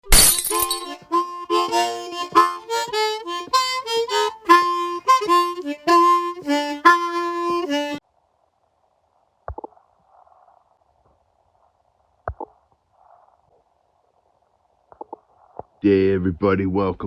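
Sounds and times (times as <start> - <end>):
harmonica playing: 0.0 - 8.0.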